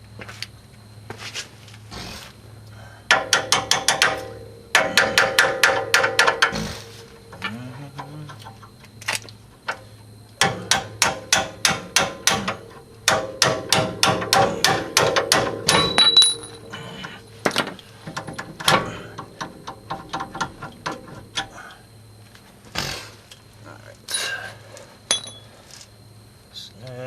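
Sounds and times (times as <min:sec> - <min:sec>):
hammer striking metal: 0:03.1 - 0:06.7, 0:10.4 - 0:16.7.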